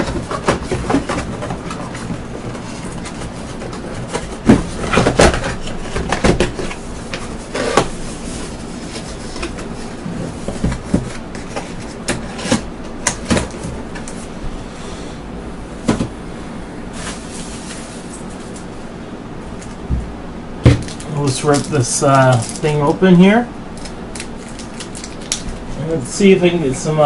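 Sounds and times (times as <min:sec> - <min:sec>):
packaging handled by hand: 0:20.7 - 0:23.0, 0:23.8 - 0:25.7.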